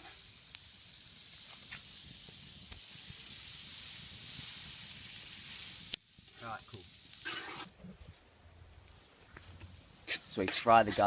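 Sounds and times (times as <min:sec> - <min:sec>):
butter sizzling in a frying pan: 0:00.0 - 0:07.7, 0:10.0 - 0:11.0.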